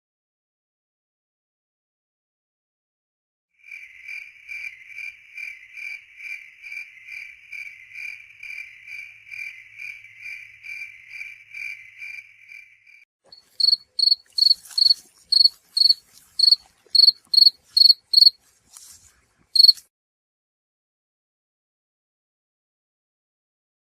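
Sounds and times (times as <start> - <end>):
high-pitched cricket chirping: 3.6 - 18.4, 19.6 - 19.8
low-pitched cricket chirping: 3.6 - 18.4, 19.6 - 19.8.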